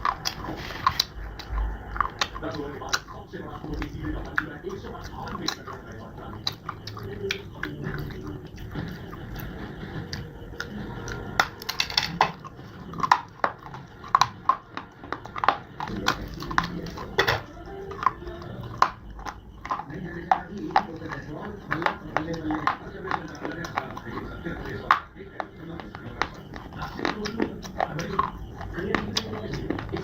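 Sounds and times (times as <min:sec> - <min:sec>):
crunching and chewing: 0:00.0 - 0:30.0.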